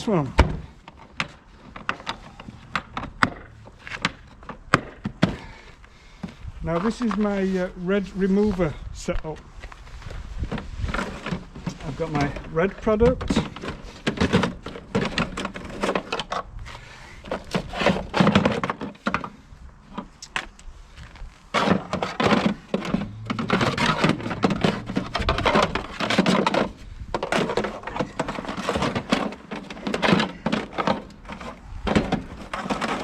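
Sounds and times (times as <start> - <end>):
bottles and tools rattling in plastic box: 10.5 - 16.5, 21.5 - 33.0.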